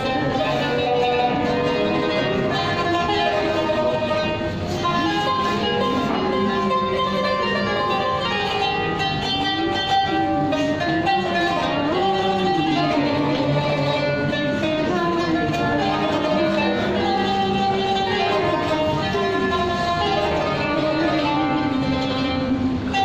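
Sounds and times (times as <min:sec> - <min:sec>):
plucked zither melody: 0:00.0 - 0:23.0.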